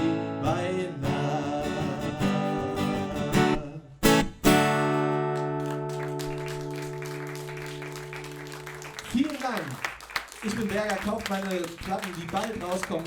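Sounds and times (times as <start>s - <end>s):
guitar strumming chords: 0.0s - 9.0s.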